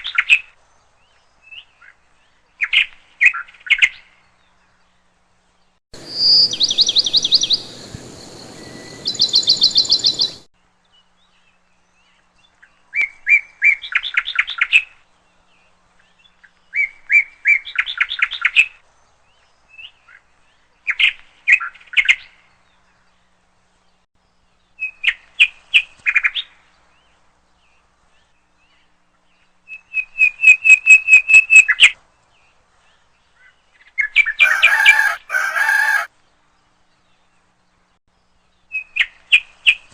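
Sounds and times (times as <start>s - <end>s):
faint background noise: 0.0s - 39.9s
songbird trilling: 6.0s - 10.5s.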